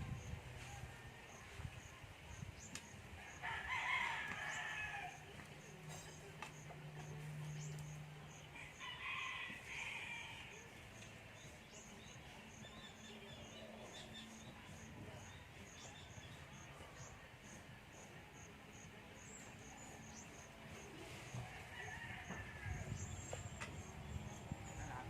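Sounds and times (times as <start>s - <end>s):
rooster crowing: 3.3s - 5.3s, 8.6s - 10.6s, 21.4s - 23.1s.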